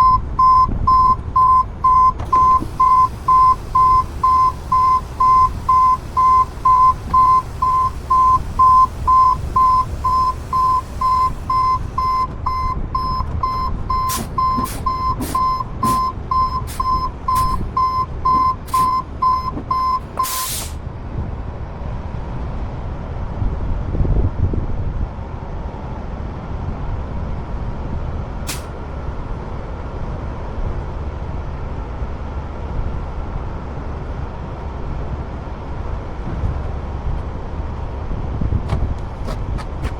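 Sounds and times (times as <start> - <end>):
truck backup alarm beeping: 0.0 - 20.8
heavy truck engine rumble: 0.0 - 39.9
sharp click: 28.5 - 28.7.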